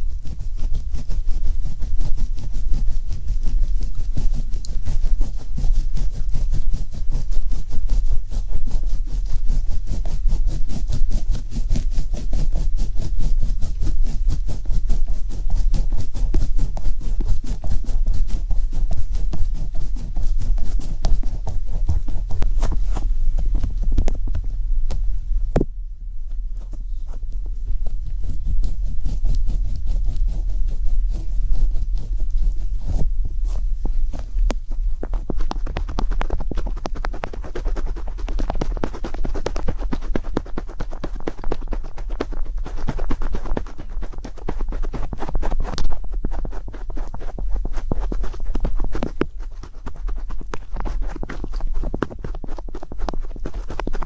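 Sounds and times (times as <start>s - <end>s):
scratchy handling noise: 0.0s - 54.0s
steady low rumble: 12.9s - 40.0s.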